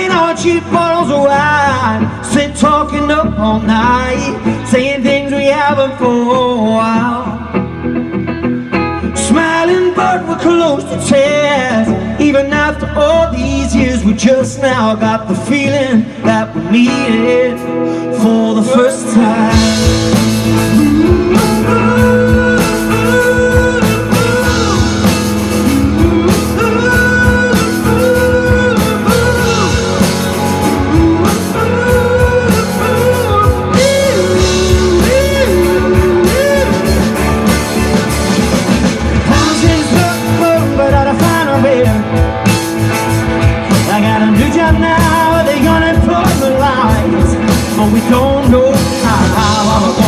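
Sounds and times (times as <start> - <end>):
live rock band playing: 0.0 - 50.0
lead guitar bending notes: 16.1 - 50.0.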